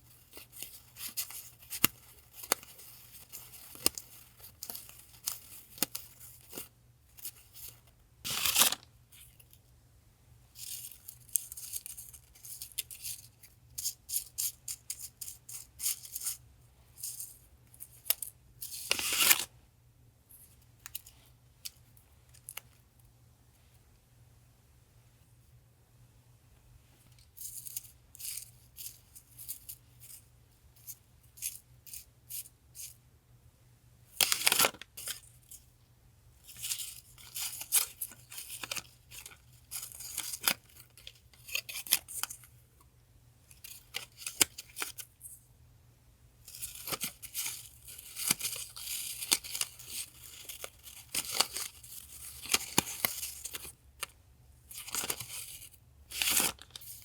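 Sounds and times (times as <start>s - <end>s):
paper rustling: 0.1s - 8.8s.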